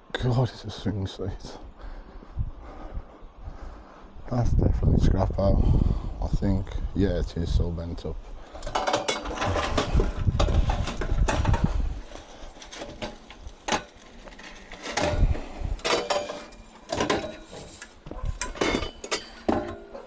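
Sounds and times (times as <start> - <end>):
metal tubes clanking and rattling: 8.5 - 20.0.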